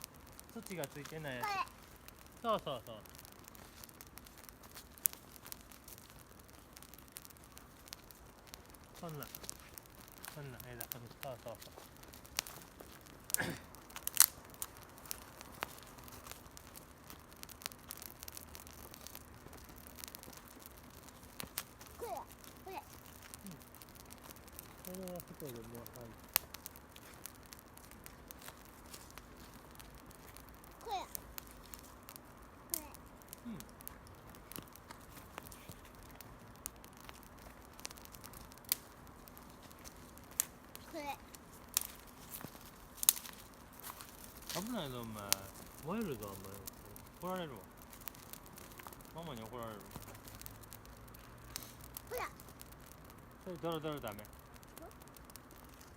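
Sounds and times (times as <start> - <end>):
fire pops and snaps: 0.0 - 55.9
twigs and leaves crackling: 0.0 - 55.9
twig snapping: 11.6 - 24.8, 41.6 - 44.7.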